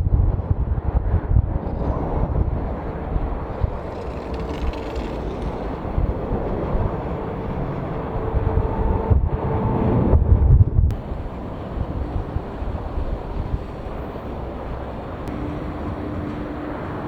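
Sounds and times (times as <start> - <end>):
jet engines rumbling: 2.6 - 10.3, 10.9 - 17.0
faint steady whine: 10.9 - 17.0.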